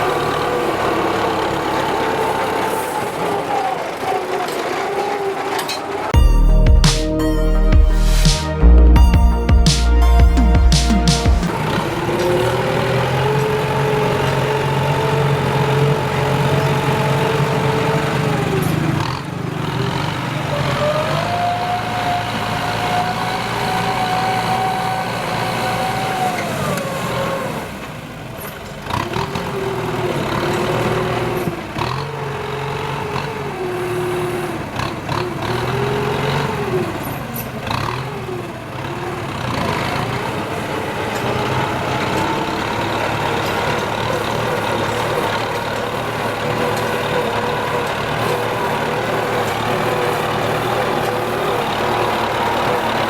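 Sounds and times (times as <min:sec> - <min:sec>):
tractor diesel engine under load: 0:00.0 - 0:53.0.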